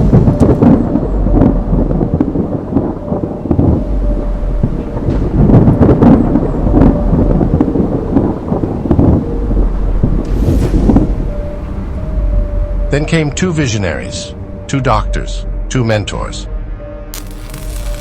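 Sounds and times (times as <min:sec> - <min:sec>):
rain: 0:00.0 - 0:13.0, 0:17.1 - 0:18.0
rolling thunder: 0:00.0 - 0:13.0.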